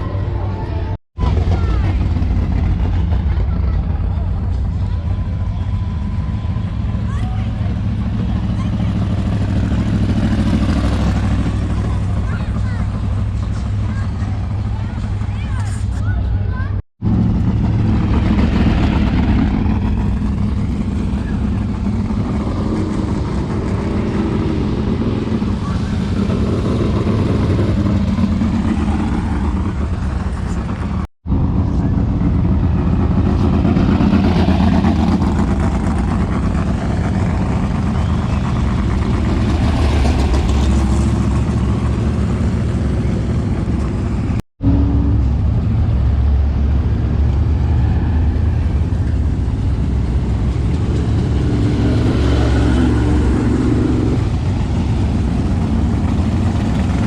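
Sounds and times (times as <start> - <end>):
vehicle engine rumble: 0.0 - 57.0.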